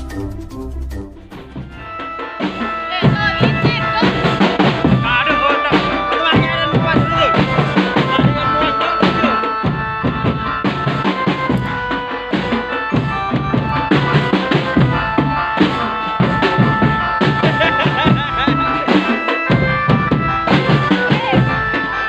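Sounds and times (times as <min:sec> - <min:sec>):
melody line: 0:00.0 - 0:12.6
music with drum beat: 0:00.0 - 0:22.0.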